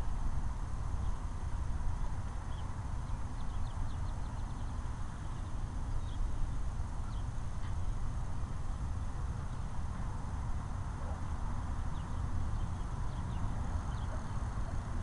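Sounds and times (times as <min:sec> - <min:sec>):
low rumble of wind on microphone: 0:00.0 - 0:15.0
faint high bird chirps: 0:07.0 - 0:07.3, 0:11.9 - 0:14.5.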